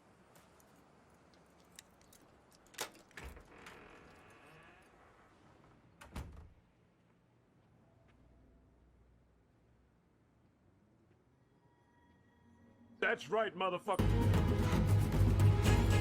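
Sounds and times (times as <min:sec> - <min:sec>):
door thumping: 0:06.0 - 0:06.6.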